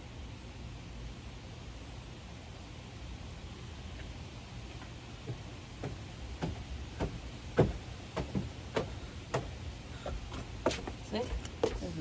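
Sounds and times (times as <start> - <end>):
footsteps walking: 3.9 - 12.0.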